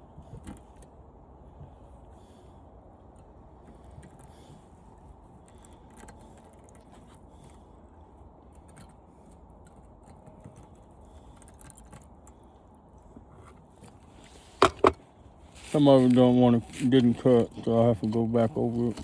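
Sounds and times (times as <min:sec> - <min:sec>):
low background hum: 0:00.0 - 0:19.0
metal fins clicking and scraping: 0:13.3 - 0:19.0.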